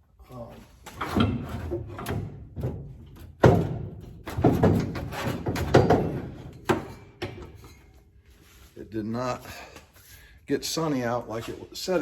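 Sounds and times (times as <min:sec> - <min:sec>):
heavy thunks and knocks: 0:01.0 - 0:06.9.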